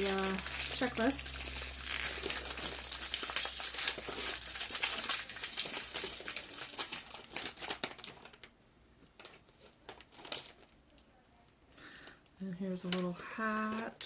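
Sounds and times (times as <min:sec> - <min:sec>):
packaging crinkling and rustling: 0:00.0 - 0:11.1.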